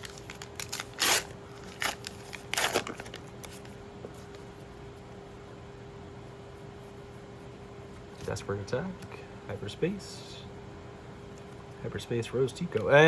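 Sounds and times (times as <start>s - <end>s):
foil wrapper rustling: 0.0s - 3.7s.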